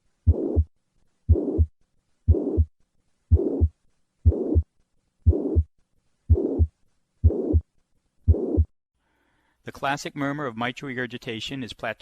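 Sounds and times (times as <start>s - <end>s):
blowing heart murmur: 0.3s - 0.7s, 1.3s - 1.7s, 2.3s - 2.7s, 3.3s - 4.7s, 5.3s - 5.7s, 6.3s - 7.6s
heartbeat through stethoscope: 0.3s - 0.7s, 1.3s - 1.7s, 2.3s - 2.7s, 3.3s - 5.7s, 6.3s - 7.7s, 8.3s - 8.7s.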